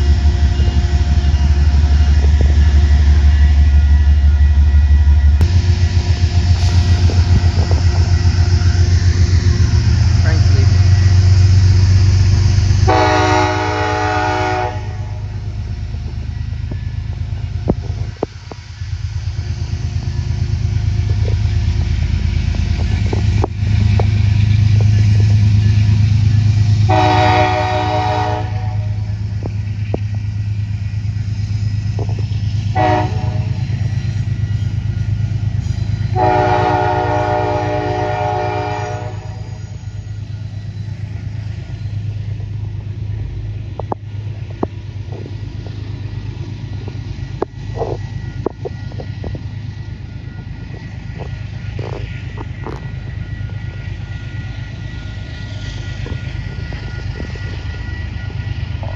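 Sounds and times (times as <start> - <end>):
train horn blasts: 12.8 - 15.4, 26.8 - 29.1, 32.7 - 33.7, 36.1 - 39.6.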